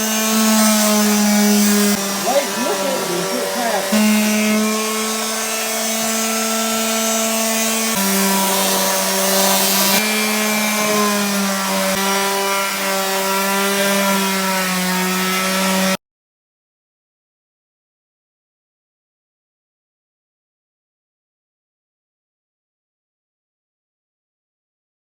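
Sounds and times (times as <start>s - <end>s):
electric sander on wood: 0.0s - 16.0s.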